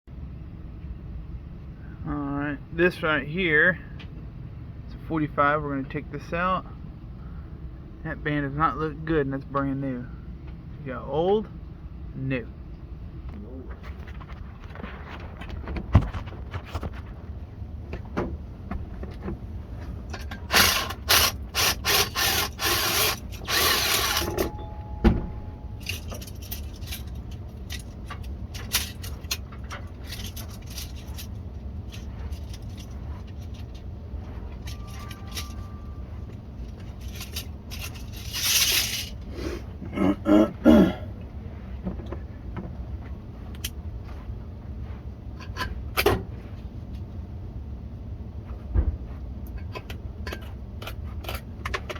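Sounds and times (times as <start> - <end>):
low hum: 0.1 - 51.4
tool scraping and clatter on pipe: 19.8 - 24.6, 25.8 - 39.3.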